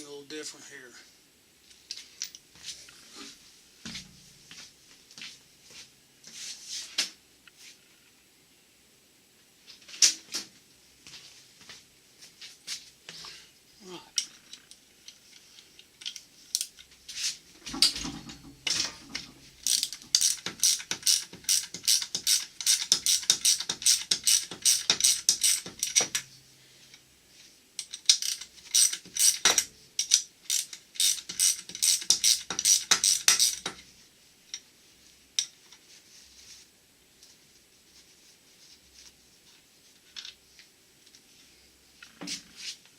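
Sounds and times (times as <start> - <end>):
ratchet wrench clicking: 19.6 - 26.2, 27.8 - 33.8.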